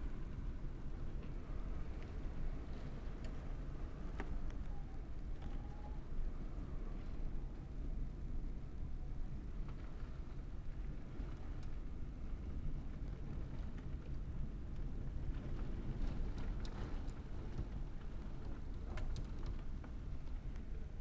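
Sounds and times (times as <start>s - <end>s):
low storm rumble: 0.0s - 21.0s
raindrops ticking on surfaces: 9.6s - 20.7s.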